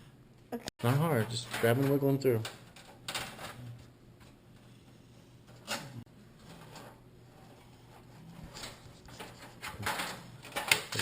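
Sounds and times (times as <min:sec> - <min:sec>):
handling computer cables: 0:08.2 - 0:11.0.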